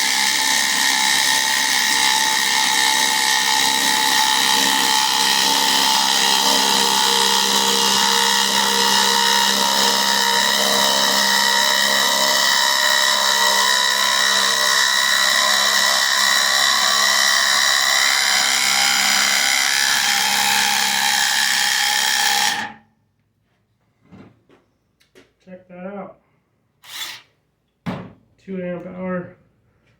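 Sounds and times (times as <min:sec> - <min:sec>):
impact wrench hammering: 0:00.0 - 0:12.4.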